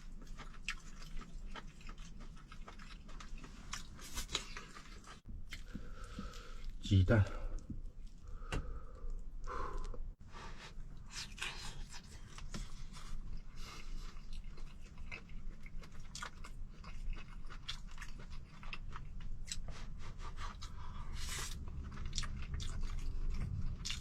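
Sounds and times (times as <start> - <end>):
person chewing and crunching: 0.0 - 6.8, 11.0 - 24.0.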